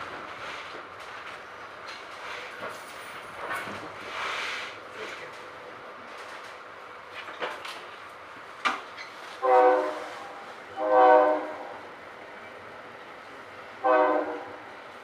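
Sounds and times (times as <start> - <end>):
train running noise: 0.0 - 15.0
train horn blasts: 9.4 - 11.8, 13.8 - 14.6.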